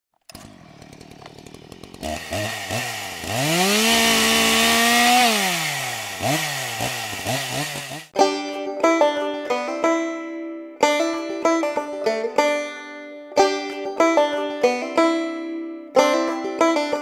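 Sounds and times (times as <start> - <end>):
chainsaw engine revving: 0.2 - 8.2
banjo music: 0.3 - 17.0.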